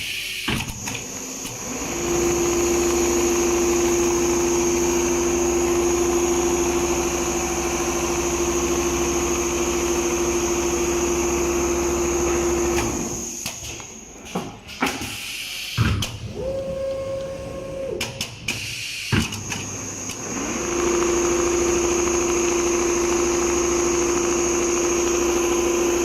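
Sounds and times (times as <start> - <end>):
sewing machine running: 1.5 - 13.3, 19.5 - 26.0.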